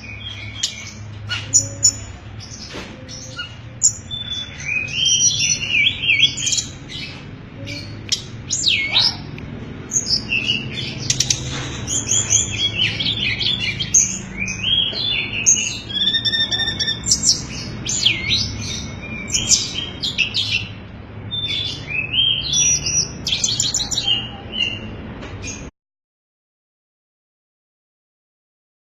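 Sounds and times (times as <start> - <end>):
songbird chirping and whistling: 3.1 - 24.9.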